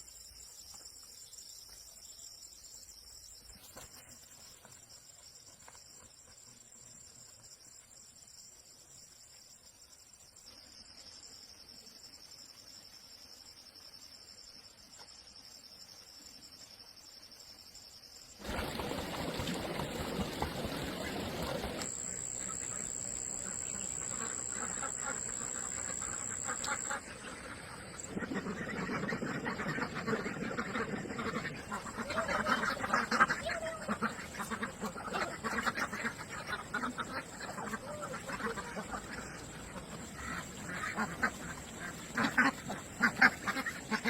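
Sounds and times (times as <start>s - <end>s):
crickets trilling: 0.0s - 44.0s
strong high insect tone: 21.0s - 28.1s.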